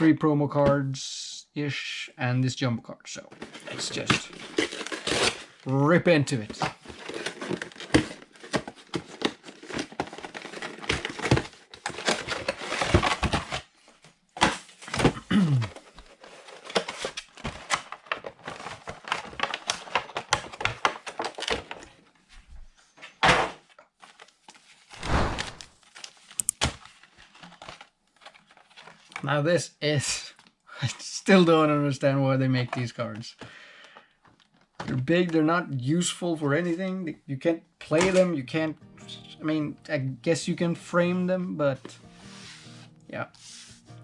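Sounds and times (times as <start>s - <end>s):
packaging tearing and rustling: 3.4s - 5.6s, 6.7s - 13.7s, 15.8s - 21.9s, 24.0s - 29.2s
objects thudding down: 25.0s - 25.7s.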